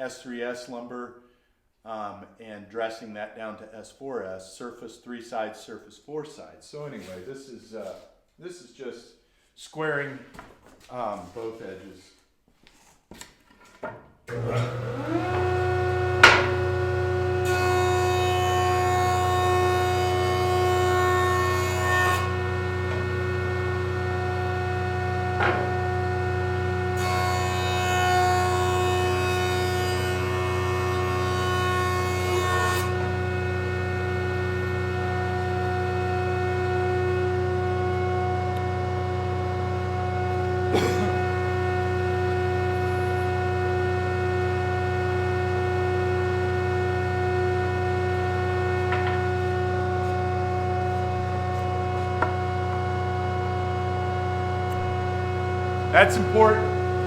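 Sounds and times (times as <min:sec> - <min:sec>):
jointer machine hum: 0:14.3 - 0:18.1, 0:19.0 - 0:26.8, 0:54.6 - 0:57.0.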